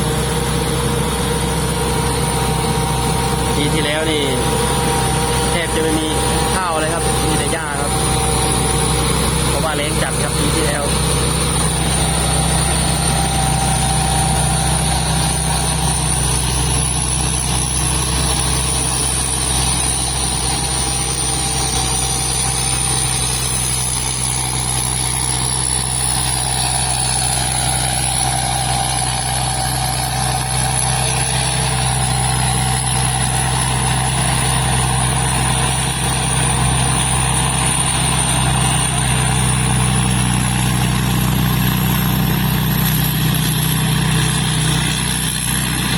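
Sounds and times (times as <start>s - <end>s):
high whine: 0.0s - 24.5s
combine harvester diesel engine: 0.0s - 45.9s.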